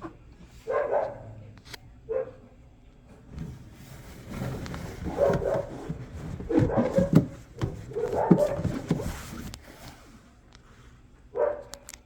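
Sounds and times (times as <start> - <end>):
dog barking: 0.6 - 1.4, 2.1 - 2.5, 7.9 - 8.7, 11.3 - 11.8.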